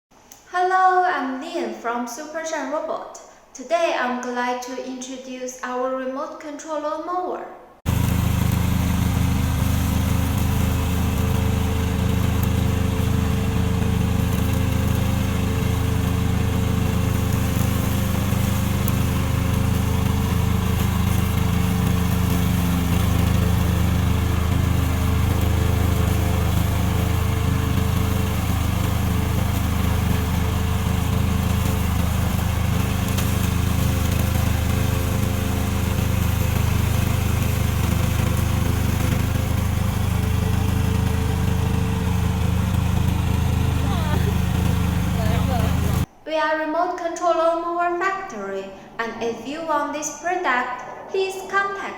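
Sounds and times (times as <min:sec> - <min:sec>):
mower engine running: 0:07.9 - 0:46.1.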